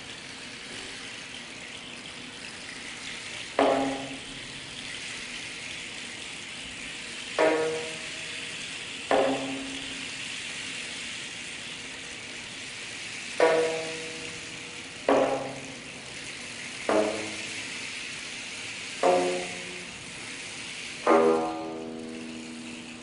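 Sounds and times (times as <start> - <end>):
steady hiss: 0.0 - 23.0
plucked zither notes: 3.6 - 4.4, 19.0 - 20.0, 21.1 - 23.0.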